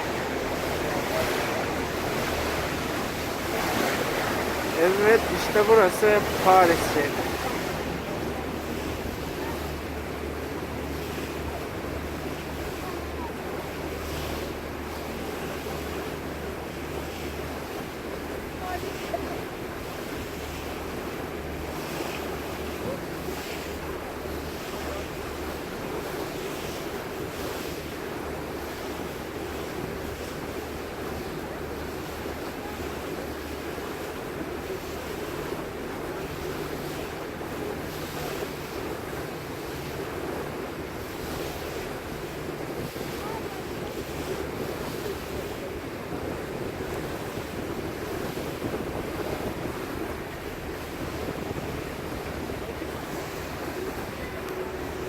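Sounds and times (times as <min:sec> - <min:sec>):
boat engine drone: 0:00.0 - 0:55.0
rush of wind and water: 0:00.0 - 0:55.0
wind buffeting microphone: 0:39.7 - 0:55.0.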